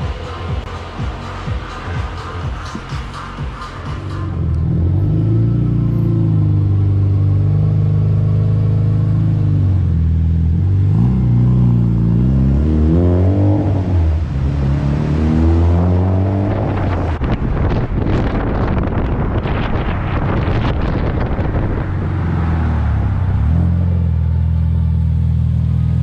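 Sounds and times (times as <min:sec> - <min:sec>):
rushing noise: 0:00.0 - 0:06.4
car engine revving: 0:00.0 - 0:26.0.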